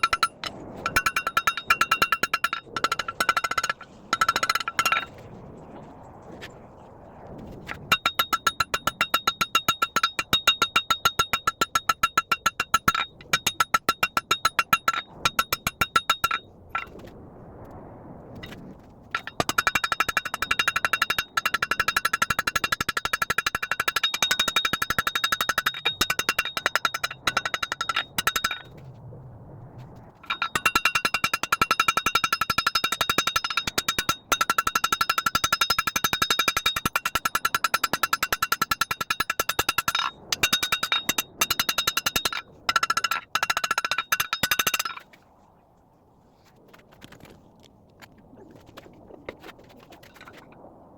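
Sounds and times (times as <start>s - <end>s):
hammer striking anvil: 0.0s - 5.1s, 7.9s - 16.9s, 19.2s - 28.7s, 30.3s - 45.0s.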